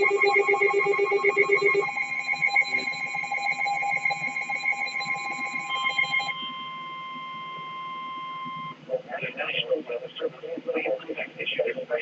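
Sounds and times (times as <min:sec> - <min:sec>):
steady alert tone: 0:00.0 - 0:06.9
rapid pulsing alert beeps: 0:00.0 - 0:08.8.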